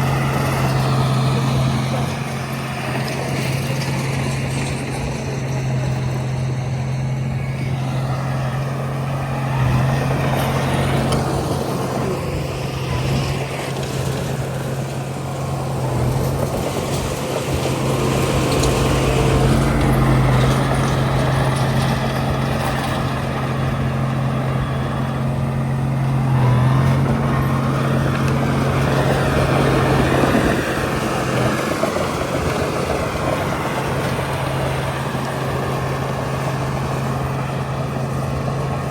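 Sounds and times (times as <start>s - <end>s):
bulldozer diesel engine running: 0.0s - 38.9s.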